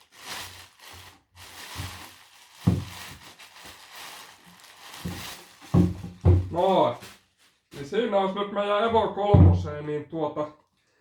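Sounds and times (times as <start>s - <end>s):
packing material crumpling: 0.0s - 7.9s.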